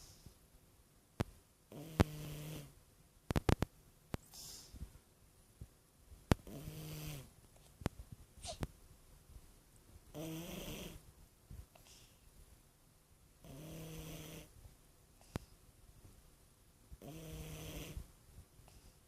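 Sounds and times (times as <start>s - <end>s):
cat snoring: 1.7s - 2.7s, 6.4s - 7.3s, 10.1s - 11.0s, 13.4s - 14.5s, 17.0s - 18.0s.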